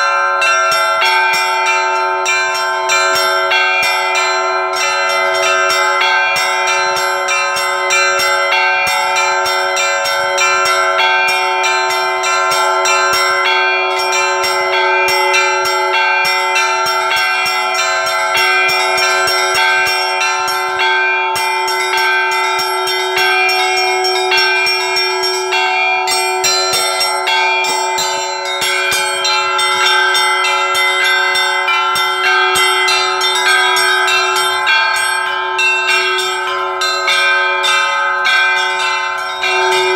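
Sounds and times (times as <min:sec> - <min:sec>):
large bell humming: 0:00.0 - 0:39.9
rapid small bell strikes: 0:37.8 - 0:39.9.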